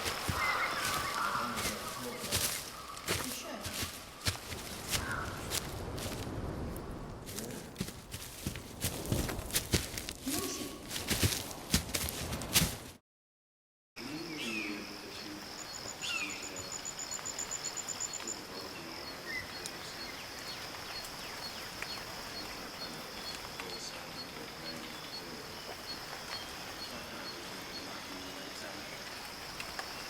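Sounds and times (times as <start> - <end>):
fast insect trill: 0.0 - 6.2, 14.1 - 30.0
high insect drone: 0.0 - 6.3, 14.0 - 30.0.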